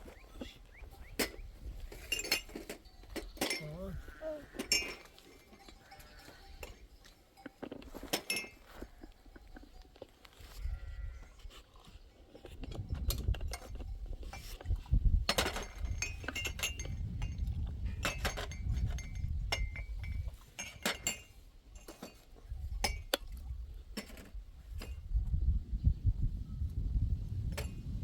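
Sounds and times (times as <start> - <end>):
clinks and clatter: 0.4 - 10.4, 11.5 - 23.4, 24.0 - 25.0.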